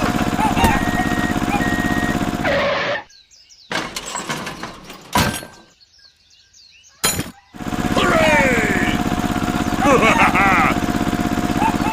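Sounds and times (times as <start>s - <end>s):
small motor humming: 0.0s - 3.1s, 7.6s - 11.9s
birds chirping: 0.0s - 11.9s.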